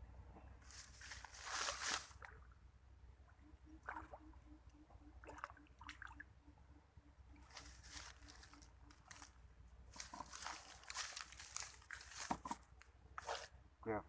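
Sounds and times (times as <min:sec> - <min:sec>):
water splashes and drips: 0:05.2 - 0:06.3.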